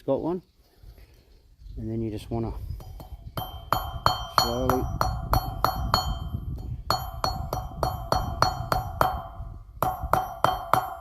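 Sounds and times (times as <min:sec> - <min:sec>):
hammer striking steel: 0:02.8 - 0:11.0.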